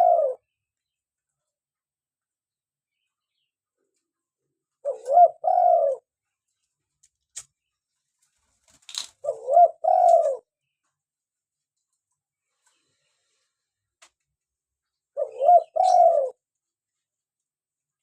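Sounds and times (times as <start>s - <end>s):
dove cooing: 0.0s - 0.5s, 4.8s - 6.1s, 9.2s - 10.5s, 15.1s - 16.4s.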